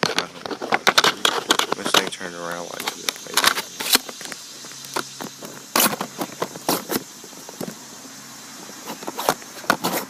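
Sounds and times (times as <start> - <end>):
handling clicks and knocks: 0.0 - 7.8
faint steady hum: 0.0 - 10.0.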